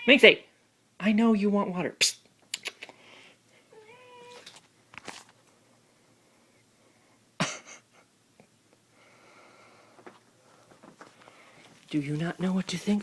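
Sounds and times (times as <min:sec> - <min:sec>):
cat meowing: 0:00.0 - 0:00.2, 0:03.7 - 0:04.6.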